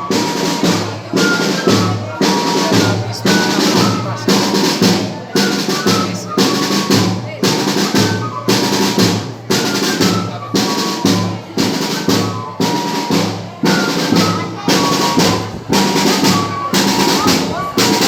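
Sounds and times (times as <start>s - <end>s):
snare drum: 0.0s - 18.0s
fifes playing melody: 10.5s - 18.0s
bass drum: 14.1s - 18.0s.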